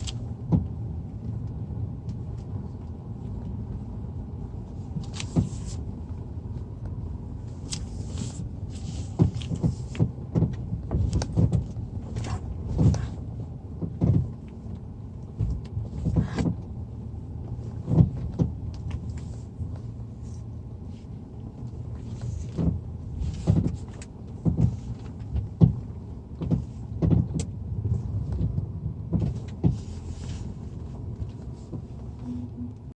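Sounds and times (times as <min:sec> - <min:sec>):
low road rumble: 0:00.0 - 0:32.9
car suspension knocking: 0:09.1 - 0:14.6, 0:17.7 - 0:19.0, 0:22.4 - 0:29.9.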